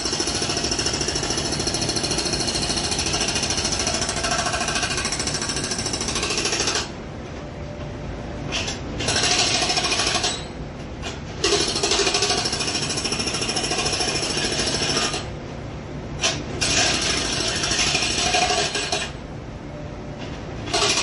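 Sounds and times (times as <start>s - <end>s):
jackhammer hammering: 0.0s - 6.9s, 11.4s - 15.3s.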